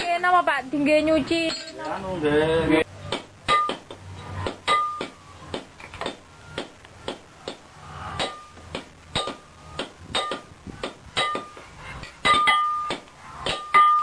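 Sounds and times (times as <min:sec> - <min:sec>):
hammer striking metal on anvil: 0:03.1 - 0:07.6, 0:08.2 - 0:14.0.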